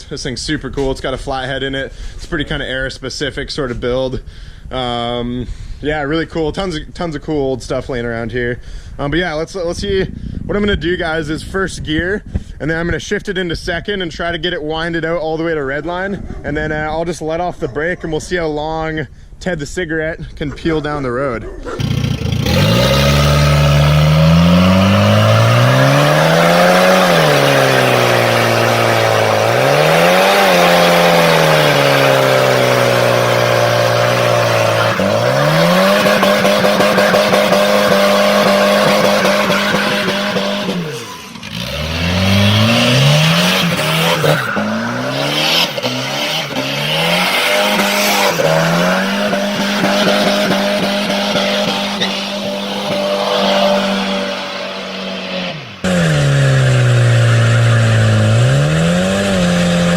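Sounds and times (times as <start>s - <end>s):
car engine revving: 21.8s - 59.9s
tyres squealing: 22.5s - 58.4s.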